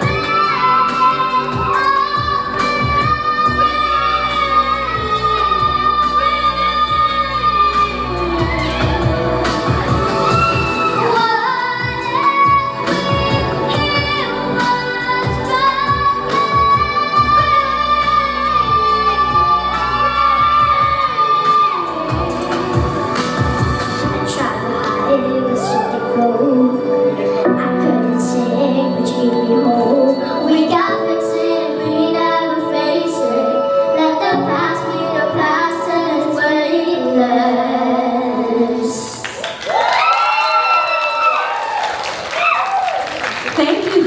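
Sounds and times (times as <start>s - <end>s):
pop band with drums: 0.0s - 26.3s
woman singing a long high note: 0.0s - 39.1s
backing music: 0.0s - 44.0s.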